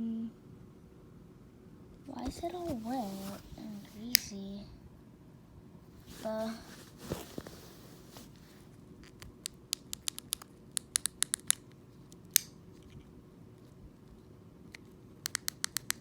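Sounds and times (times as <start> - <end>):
fidget toy clicking: 9.4 - 11.6, 15.2 - 16.0.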